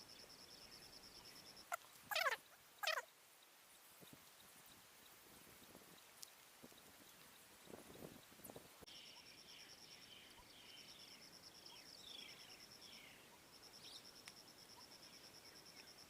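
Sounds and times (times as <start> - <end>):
insect trilling: 0.8 - 3.1.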